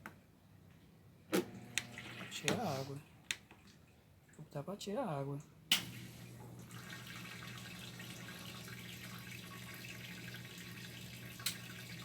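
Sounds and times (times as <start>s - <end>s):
drain pump humming: 1.4s - 3.0s, 5.7s - 12.0s.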